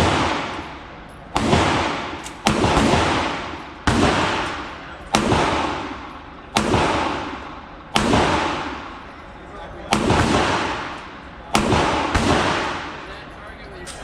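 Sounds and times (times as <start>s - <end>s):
pistol shots echoing indoors: 0.0s - 9.2s, 9.8s - 13.1s.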